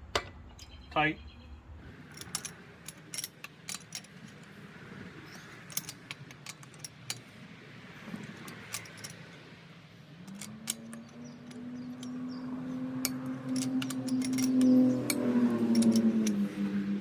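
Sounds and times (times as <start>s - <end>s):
light sharp clicks and clinks: 5.2s - 7.3s, 8.2s - 9.4s, 10.2s - 12.4s, 13.0s - 16.6s.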